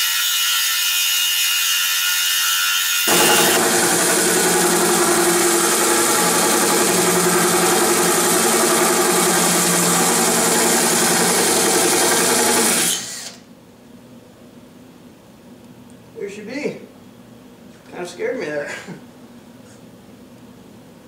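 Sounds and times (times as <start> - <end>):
electric drill cutting glass: 0.0 - 13.4.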